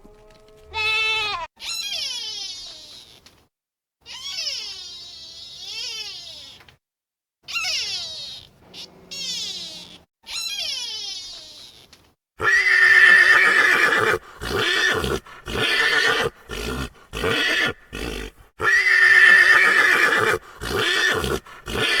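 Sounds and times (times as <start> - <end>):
horse neighing: 0.0 - 1.5, 12.4 - 22.0.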